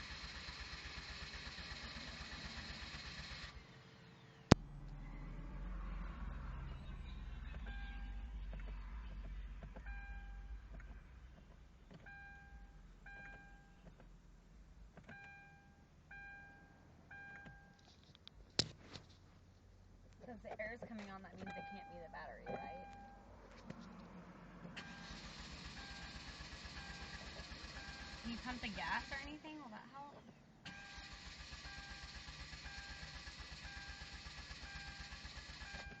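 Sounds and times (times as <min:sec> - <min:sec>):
car engine cranking: 0:00.0 - 0:18.0, 0:22.5 - 0:29.6, 0:30.2 - 0:36.0
low steady hum: 0:03.5 - 0:31.3
faint warning chime beeping: 0:06.5 - 0:10.7, 0:12.0 - 0:13.8, 0:15.1 - 0:17.8, 0:21.0 - 0:23.3
electronic warning chime: 0:07.6 - 0:08.4, 0:21.4 - 0:23.2.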